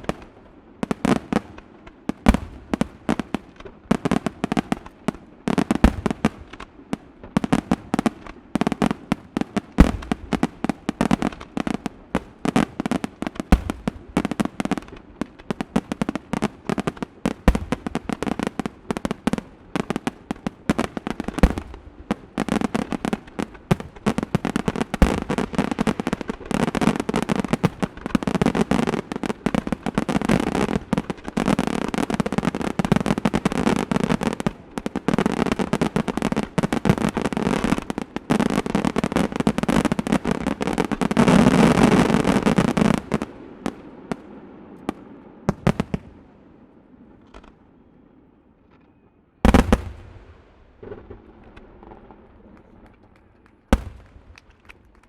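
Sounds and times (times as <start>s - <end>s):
fireworks bangs and crackling: 0.0s - 55.0s.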